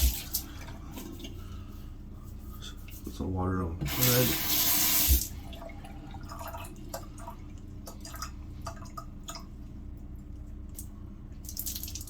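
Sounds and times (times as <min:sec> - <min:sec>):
steady low hum: 0:00.0 - 0:12.0
water dripping: 0:10.7 - 0:12.0.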